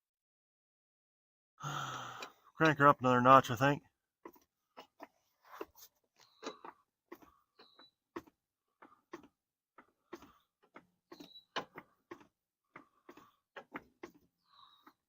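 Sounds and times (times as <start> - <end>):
car jack clicking: 6.2 - 15.0.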